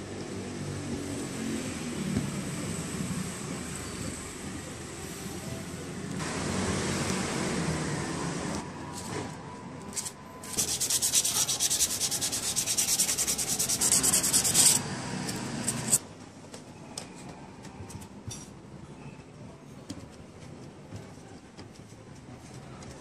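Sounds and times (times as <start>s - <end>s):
rapid rubbing like sanding: 10.4s - 14.8s.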